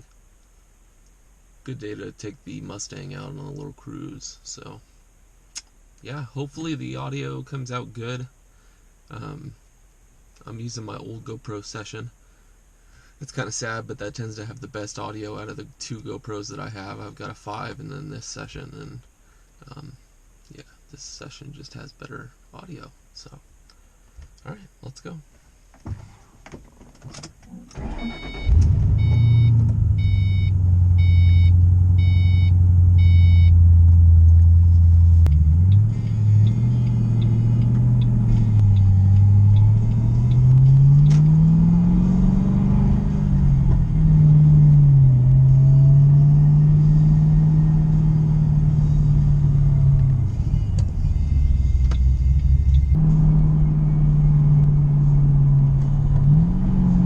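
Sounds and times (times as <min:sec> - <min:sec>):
car engine starting and idling: 0:27.4 - 0:57.0
car pulling away: 0:27.8 - 0:57.0
dashboard warning chime: 0:27.9 - 0:33.6.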